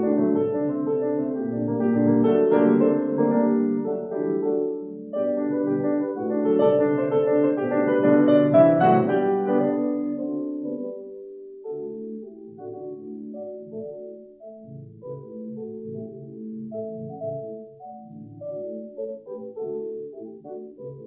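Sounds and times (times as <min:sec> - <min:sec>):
classical piano music: 0:00.0 - 0:21.0.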